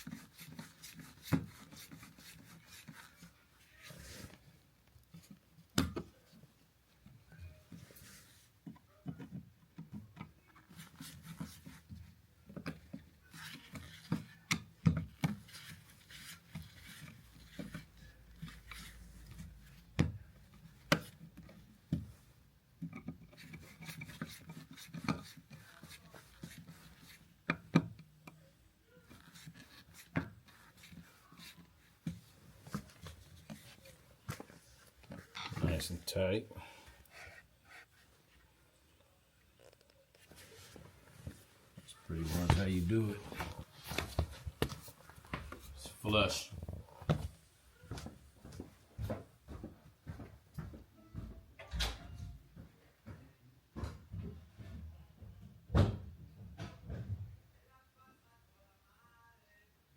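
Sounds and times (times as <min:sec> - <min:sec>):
hand work clicks and scraping: 0:22.8 - 0:28.4.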